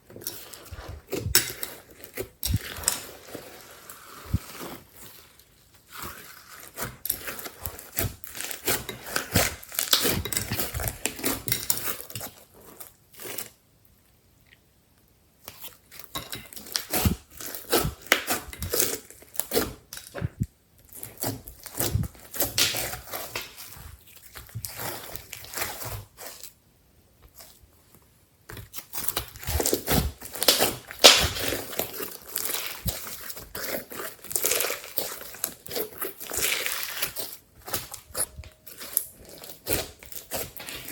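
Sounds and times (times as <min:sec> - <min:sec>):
slime crackling pops: 0:30.4 - 0:31.7.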